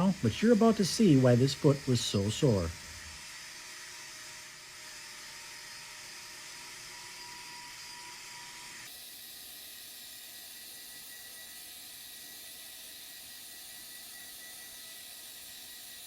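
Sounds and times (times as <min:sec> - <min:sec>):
thin steady whine: 0:00.0 - 0:08.9.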